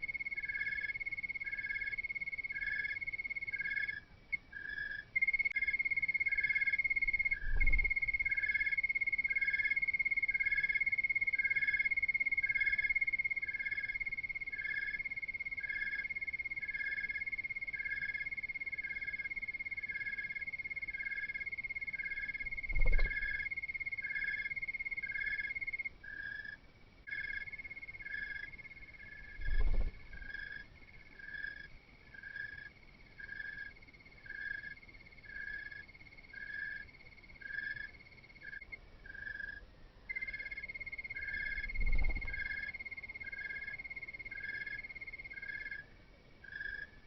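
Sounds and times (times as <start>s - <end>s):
pulsing animal chirp: 21.0s - 30.6s, 37.4s - 45.8s.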